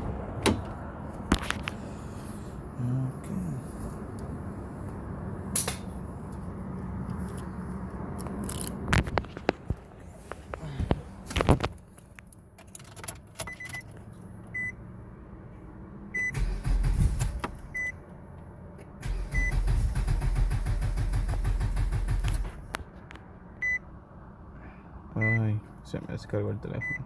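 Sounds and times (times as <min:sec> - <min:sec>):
car engine cranking: 0:00.0 - 0:01.8, 0:08.2 - 0:09.6, 0:10.4 - 0:14.7, 0:16.1 - 0:18.0, 0:18.8 - 0:23.0
electronic warning beep: 0:14.5 - 0:16.4, 0:17.2 - 0:19.7, 0:23.4 - 0:23.8, 0:25.2 - 0:25.5, 0:26.8 - 0:27.0.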